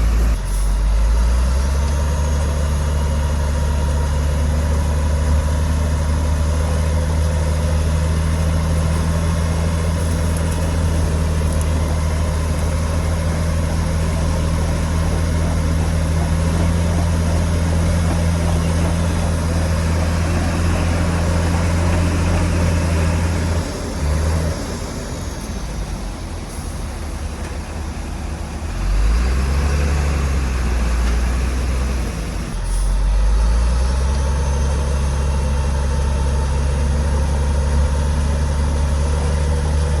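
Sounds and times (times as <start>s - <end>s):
heavy diesel engine running: 0.0s - 40.0s.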